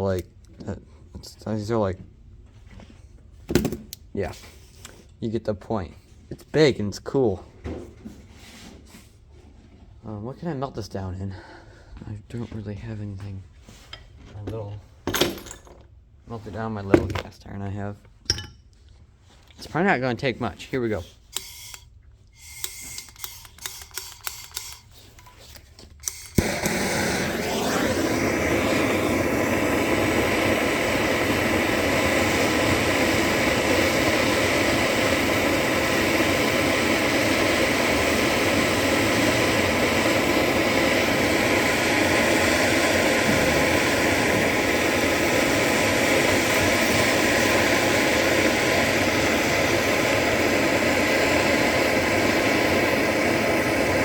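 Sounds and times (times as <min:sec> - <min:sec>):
blowtorch flame hissing: 0:22.4 - 0:25.2, 0:26.0 - 0:54.0
blowtorch lighting with a pop: 0:26.0 - 0:54.0.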